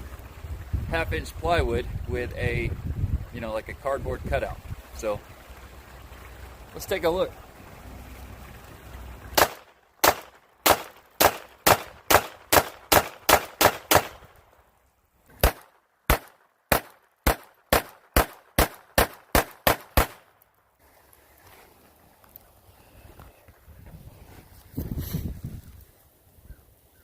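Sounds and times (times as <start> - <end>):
pistol gunshots: 9.4 - 14.4, 15.4 - 20.3.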